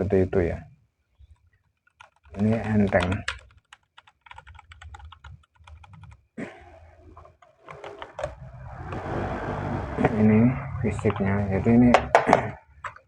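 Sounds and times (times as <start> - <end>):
mechanical keyboard keys clicking: 1.8 - 6.2.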